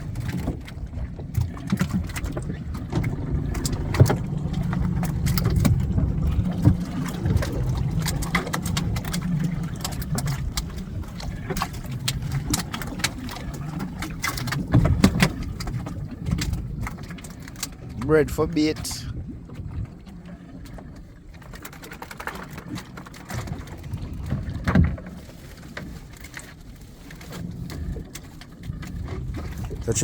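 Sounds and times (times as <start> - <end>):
steady low rumble: 2.4 - 13.5.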